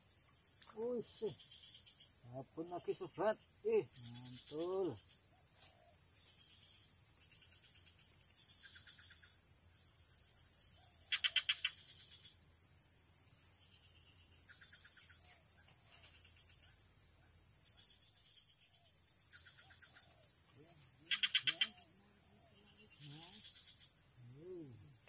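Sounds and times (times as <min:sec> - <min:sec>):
high insect drone: 0:00.0 - 0:25.0
rapid pulsed frog calls: 0:00.6 - 0:12.6, 0:13.6 - 0:25.0.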